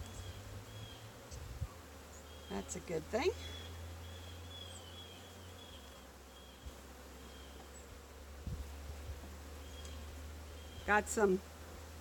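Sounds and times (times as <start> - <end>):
bees buzzing: 0.0 - 12.0.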